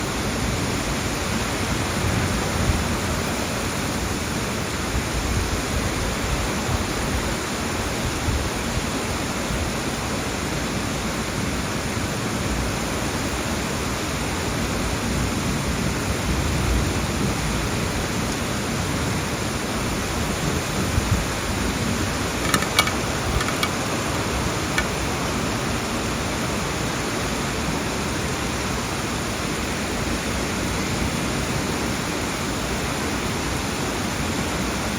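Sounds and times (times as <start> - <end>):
heavy rain hissing: 0.0 - 34.9.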